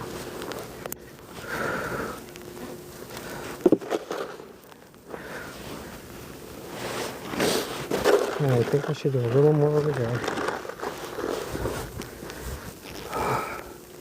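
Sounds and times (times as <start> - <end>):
snow shovel scraping pavement: 6.6 - 12.7.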